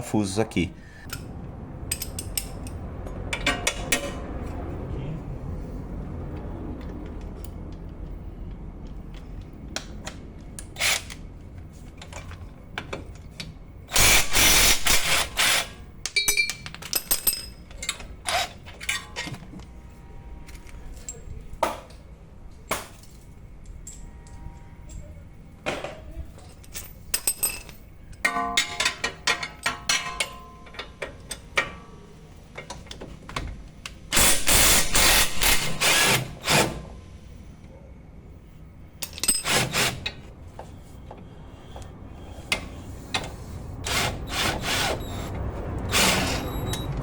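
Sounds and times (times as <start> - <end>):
metal tools clinking: 16.2 - 19.2, 26.4 - 31.6, 39.0 - 39.6
handheld power tool running: 34.2 - 36.6.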